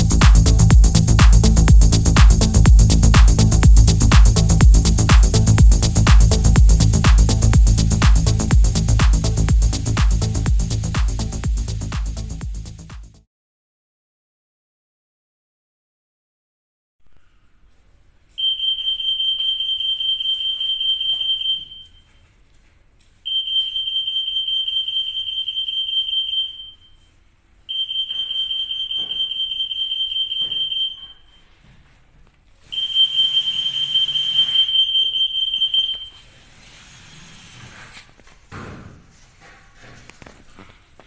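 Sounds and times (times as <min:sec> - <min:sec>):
anti-theft gate alarm beeps: 0:18.4 - 0:22.2, 0:23.3 - 0:27.1, 0:27.7 - 0:31.5, 0:32.7 - 0:36.3.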